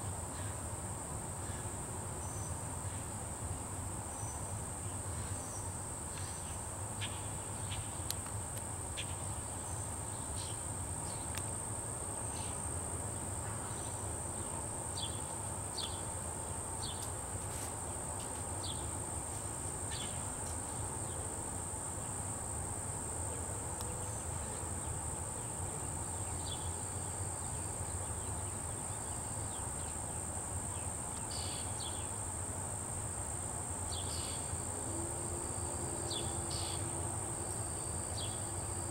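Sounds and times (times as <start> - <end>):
high-pitched insect chorus: 0.0 - 38.9
short insect chirps: 30.7 - 32.1, 36.0 - 38.9.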